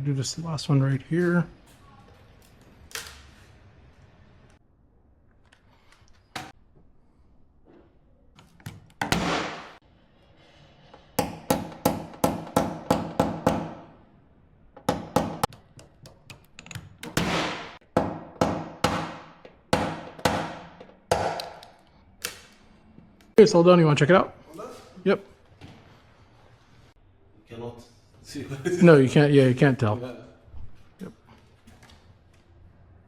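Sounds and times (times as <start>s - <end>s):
hammer tapping car panel: 11.2s - 13.8s, 18.0s - 21.5s.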